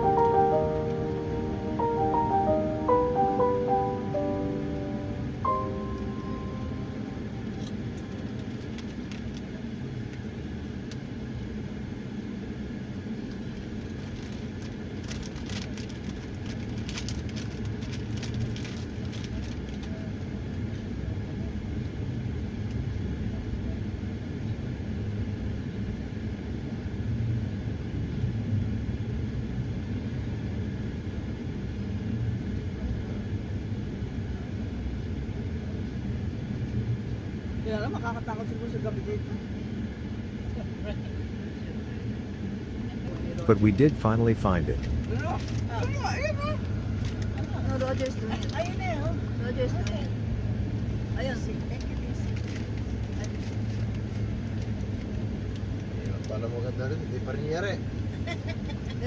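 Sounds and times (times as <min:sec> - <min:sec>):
car road noise and engine rumble: 0:07.2 - 0:22.5.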